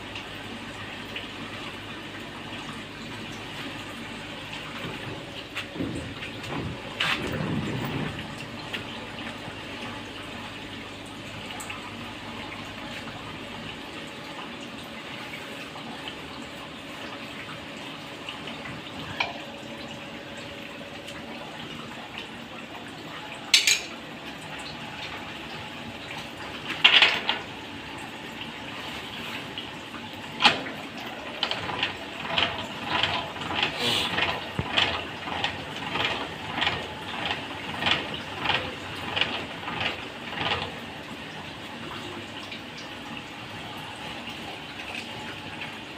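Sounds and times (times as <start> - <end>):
workshop machinery hiss: 33.8 - 34.1.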